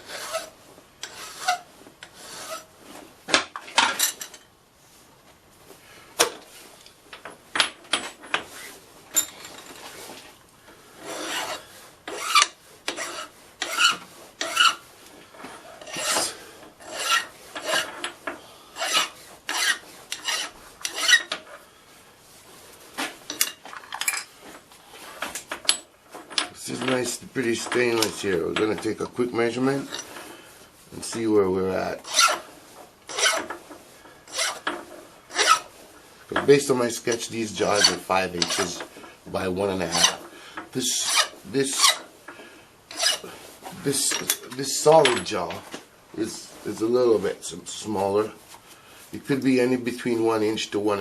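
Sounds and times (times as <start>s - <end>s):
hand file on steel: 0.0s - 2.7s, 11.0s - 14.8s, 15.8s - 18.1s, 18.8s - 21.4s, 32.0s - 33.5s, 34.2s - 34.7s, 35.3s - 35.8s, 37.0s - 38.9s, 39.6s - 42.1s, 42.9s - 45.1s.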